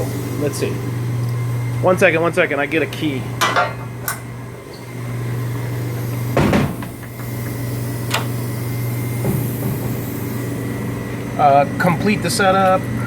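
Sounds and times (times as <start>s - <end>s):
low machine hum: 0.0s - 13.0s
clunk: 6.3s - 8.3s.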